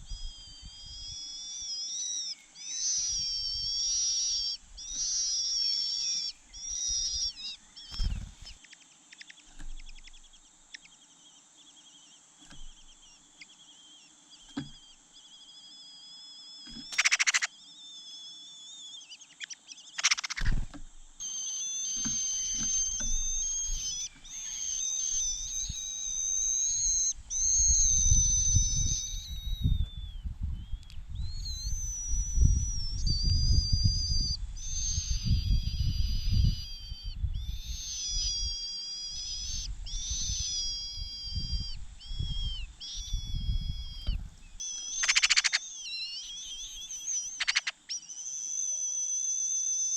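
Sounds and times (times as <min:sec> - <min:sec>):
chick begging calls: 0:16.8 - 0:17.5, 0:19.4 - 0:20.6, 0:34.8 - 0:48.0.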